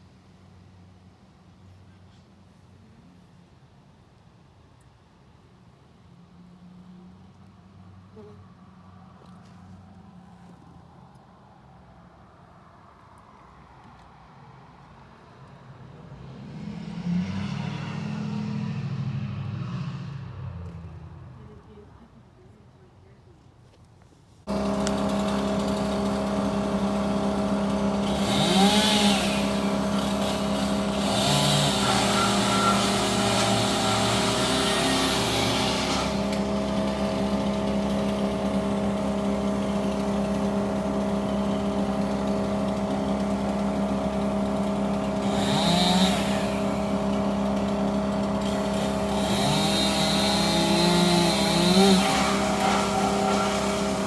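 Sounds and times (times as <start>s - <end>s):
machinery engine drone: 24.5s - 54.0s
screeching machine noise: 24.5s - 54.0s.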